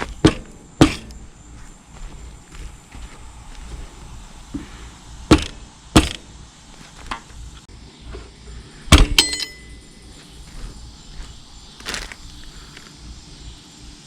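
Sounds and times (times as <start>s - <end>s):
hammer striking metal: 8.9s - 9.8s.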